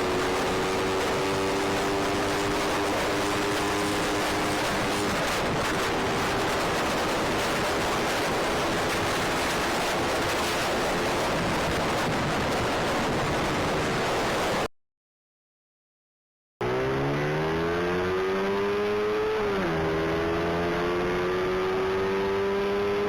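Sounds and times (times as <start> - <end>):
small motorcycle engine hum: 0.0 - 10.1, 16.6 - 23.0
wind rushing on microphone: 0.0 - 14.7.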